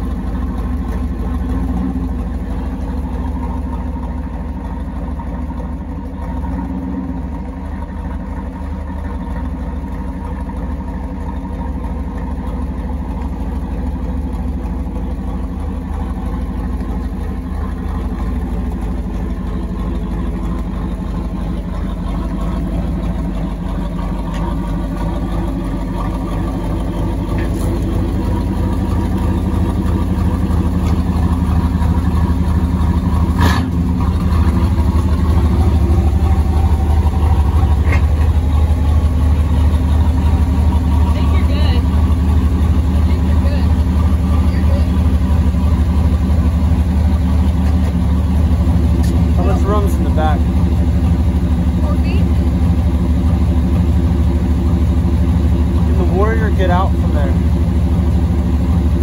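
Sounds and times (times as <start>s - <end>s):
car engine idling unevenly: 0.0s - 59.0s.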